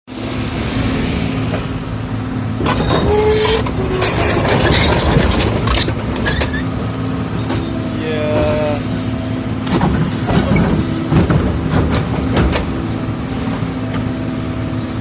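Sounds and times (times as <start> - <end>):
excavator diesel engine running: 0.1 - 15.0
short squeaks: 2.6 - 6.7
loud scraping and clattering: 2.6 - 8.5, 9.6 - 14.1.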